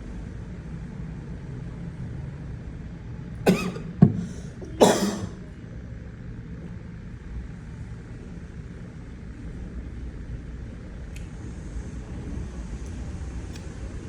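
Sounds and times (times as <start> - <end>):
person coughing: 3.5 - 5.5.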